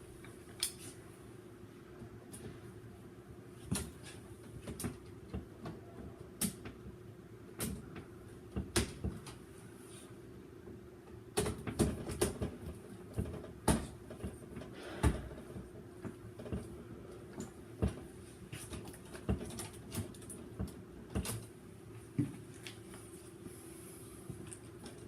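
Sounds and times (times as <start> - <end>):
steady low hum: 0.0 - 25.0
clicks of handling wires and tools: 0.2 - 1.0.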